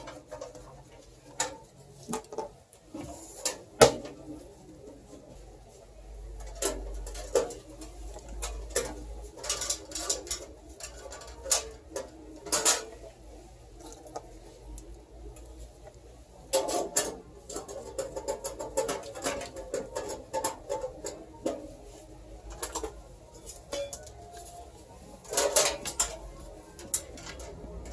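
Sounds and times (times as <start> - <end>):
clicks and knocks of computer parts: 3.4 - 4.2, 6.4 - 13.0, 16.4 - 21.6, 25.2 - 27.9.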